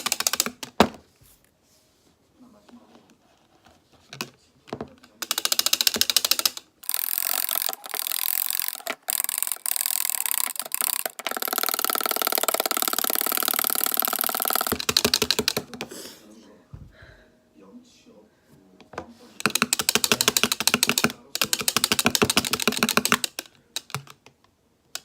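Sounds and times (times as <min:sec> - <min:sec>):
whisk clicking against a bowl: 0:05.2 - 0:15.9, 0:19.4 - 0:24.1.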